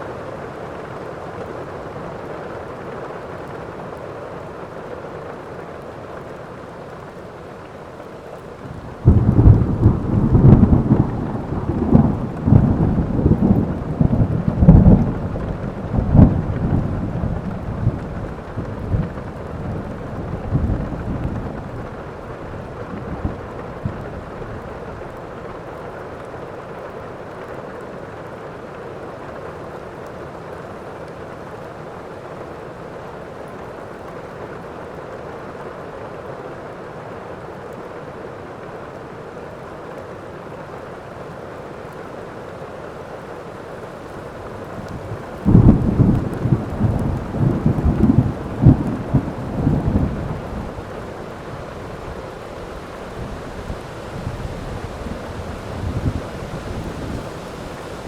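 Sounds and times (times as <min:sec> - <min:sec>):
rain falling steadily: 0:00.0 - 0:58.0
thunder rumbling: 0:08.6 - 0:25.9, 0:44.6 - 0:58.0.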